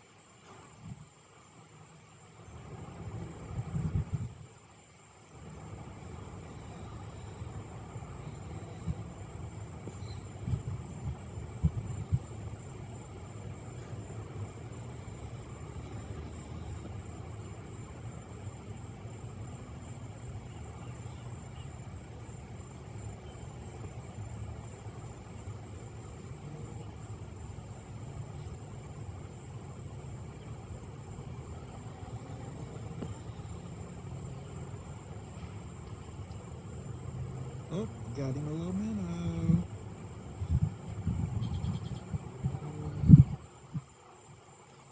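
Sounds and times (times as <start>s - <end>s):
low background rumble: 0.8s - 44.0s
high-pitched whine: 37.7s - 43.4s.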